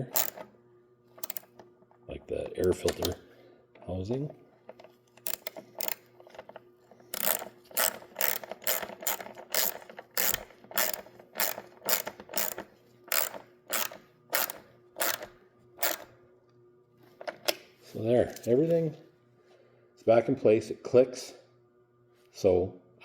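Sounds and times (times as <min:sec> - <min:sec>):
ratchet wrench clicking: 0:00.0 - 0:00.5, 0:01.2 - 0:01.5, 0:05.2 - 0:06.1, 0:07.1 - 0:16.1.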